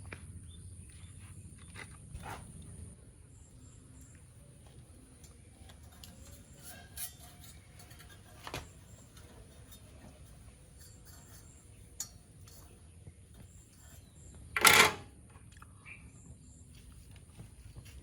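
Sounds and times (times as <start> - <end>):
light clicks and clinks: 5.1 - 14.9.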